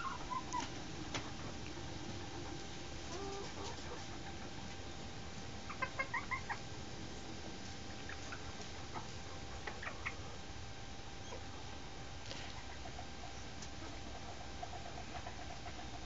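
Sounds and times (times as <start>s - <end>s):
chicken clucking: 0.0s - 4.7s, 5.7s - 6.7s, 7.9s - 10.4s, 12.5s - 16.0s.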